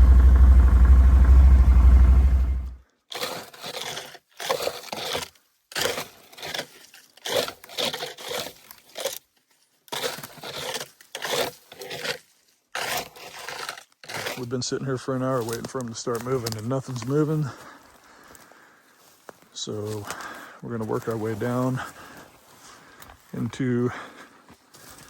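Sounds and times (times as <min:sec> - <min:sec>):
loud low rumble: 0:00.0 - 0:02.8
footsteps through dry brush: 0:05.0 - 0:14.2, 0:14.8 - 0:25.0.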